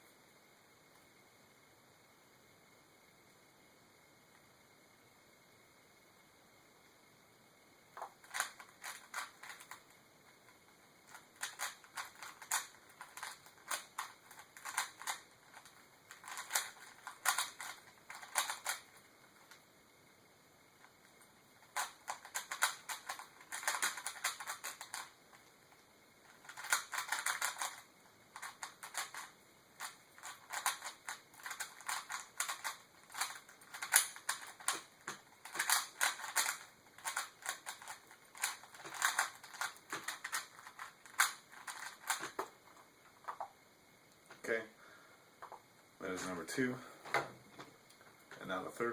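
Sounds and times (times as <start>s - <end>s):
puzzle cube plastic clicks: 8.0s - 19.6s, 20.8s - 43.6s.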